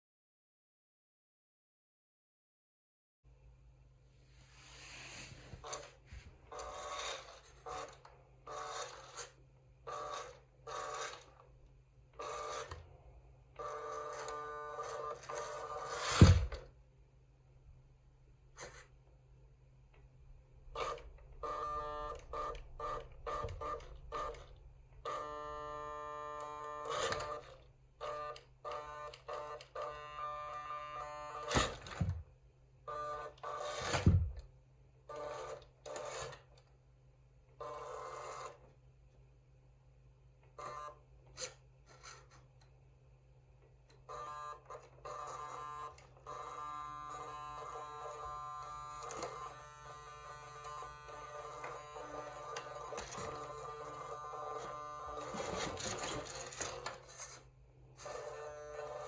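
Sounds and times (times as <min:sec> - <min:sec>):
small electric motor whining: 0:06.5 - 0:11.4, 0:12.2 - 0:12.8, 0:20.7 - 0:32.1, 0:44.1 - 0:57.3.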